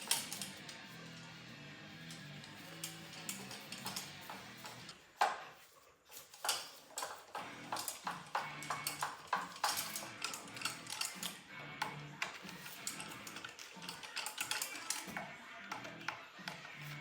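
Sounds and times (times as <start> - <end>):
background music: 0.0 - 5.0, 7.0 - 17.0
metallic clinks of hand tools: 2.1 - 4.9, 6.3 - 17.0.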